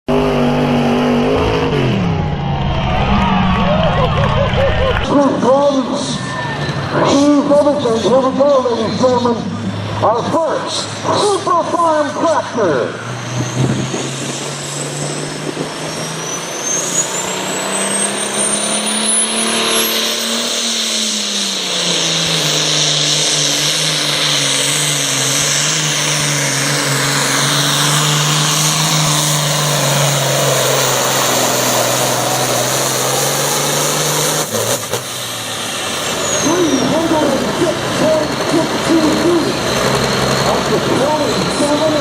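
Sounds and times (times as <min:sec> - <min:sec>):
high whine rising in pitch: 0:00.1 - 0:07.8
tractor engine running hard: 0:00.1 - 0:42.0.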